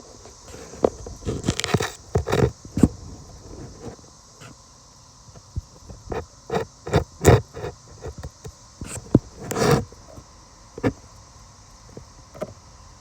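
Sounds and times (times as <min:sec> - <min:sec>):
high-pitched hiss: 0:00.0 - 0:13.0
handling rustles and bumps: 0:00.1 - 0:04.0.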